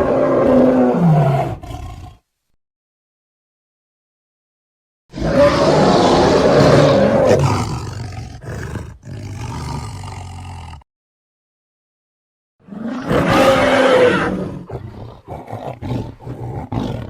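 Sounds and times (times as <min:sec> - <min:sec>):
monster roar: 0:05.1 - 0:10.8, 0:12.7 - 0:17.0.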